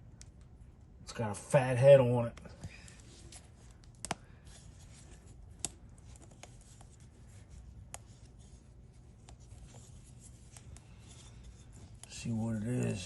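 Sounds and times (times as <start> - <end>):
faint rubbing and scraping: 4.3 - 13.0.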